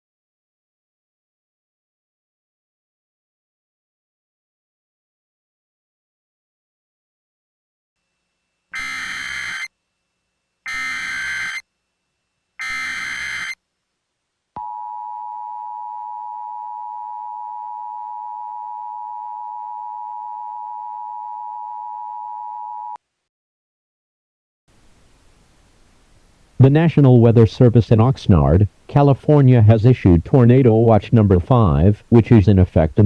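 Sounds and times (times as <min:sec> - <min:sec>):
screeching digital data tones: 0:08.8 - 0:09.7, 0:10.7 - 0:11.6, 0:12.6 - 0:13.6
steady two-tone attention signal: 0:08.8 - 0:09.7, 0:10.7 - 0:11.6, 0:12.6 - 0:13.6.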